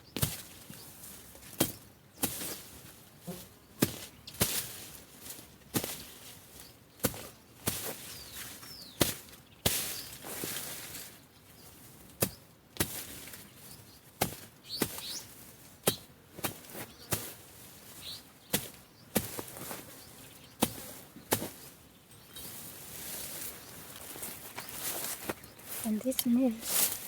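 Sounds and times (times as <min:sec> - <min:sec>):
leaves rustling: 0:00.0 - 0:12.2, 0:12.8 - 0:27.0
machete chopping vegetation: 0:00.2 - 0:00.5, 0:01.5 - 0:02.6, 0:03.8 - 0:04.8, 0:05.7 - 0:06.0, 0:07.0 - 0:08.0, 0:09.0 - 0:10.1, 0:12.2 - 0:13.2, 0:14.2 - 0:15.1, 0:15.8 - 0:17.4, 0:18.5 - 0:19.7, 0:20.6 - 0:21.7.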